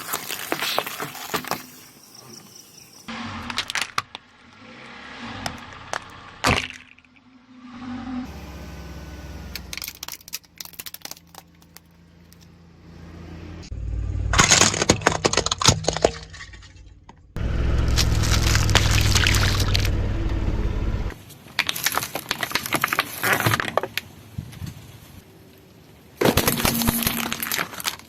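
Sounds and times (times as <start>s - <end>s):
tyre crushing brittle objects: 0.0s - 2.6s, 3.3s - 4.3s, 5.4s - 7.1s, 9.6s - 12.5s, 14.4s - 16.9s, 17.8s - 19.9s, 21.2s - 24.1s, 26.2s - 28.0s
low engine rumble: 3.1s - 21.2s.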